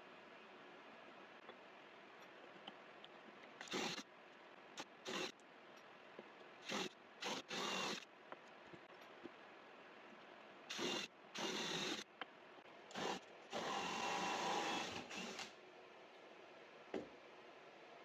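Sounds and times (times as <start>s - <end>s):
drill with hole saw cutting wood: 3.6s - 4.0s, 5.0s - 5.3s, 6.6s - 8.0s, 10.7s - 12.0s, 12.9s - 15.5s.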